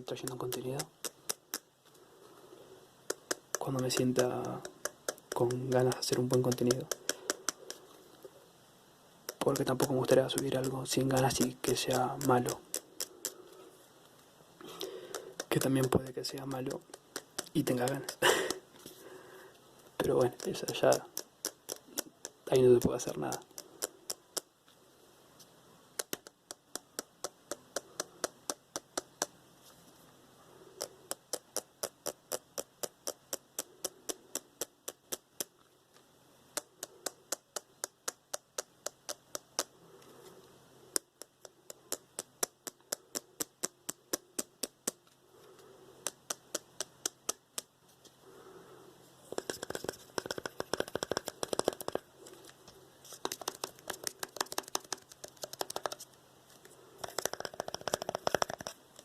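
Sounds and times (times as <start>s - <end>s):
light tapping on hard object: 3.1s - 7.8s, 9.3s - 13.4s, 15.1s - 18.6s, 20.0s - 24.5s, 49.3s - 52.4s, 53.2s - 56.0s, 57.0s - 58.8s.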